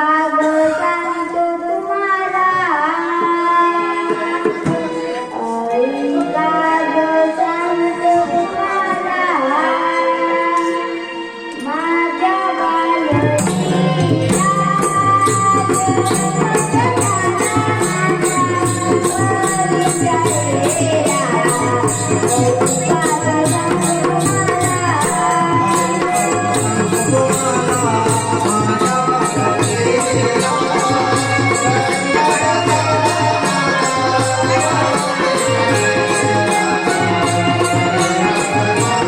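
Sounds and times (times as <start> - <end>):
drum beat: 13.5 - 39.0.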